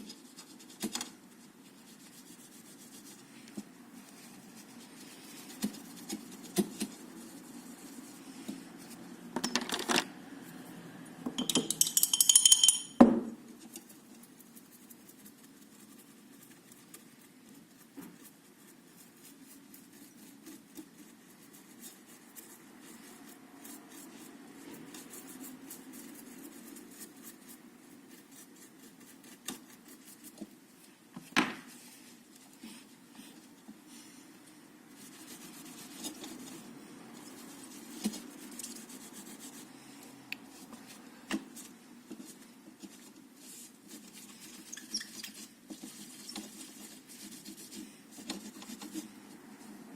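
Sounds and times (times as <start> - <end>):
hands rubbing and scraping part: 34.9 - 39.7.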